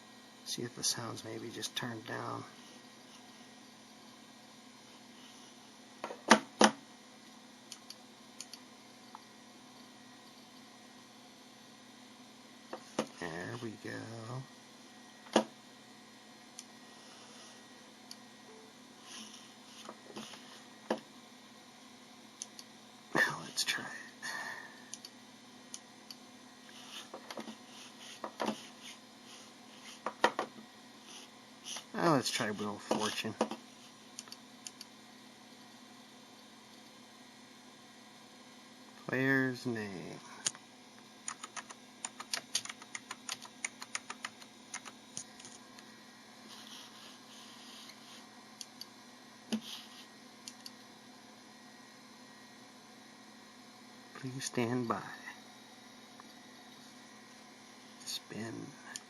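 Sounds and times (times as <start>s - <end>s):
sharp clicks: 7.7s - 8.6s, 34.2s - 34.9s, 41.2s - 45.5s
typing on a computer keyboard: 41.2s - 45.0s.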